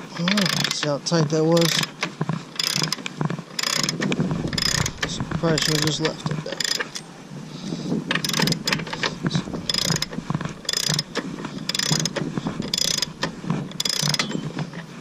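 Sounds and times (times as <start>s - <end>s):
ratchet wrench clicking: 0.2s - 0.9s, 1.6s - 2.0s, 2.6s - 7.0s, 8.1s - 14.3s.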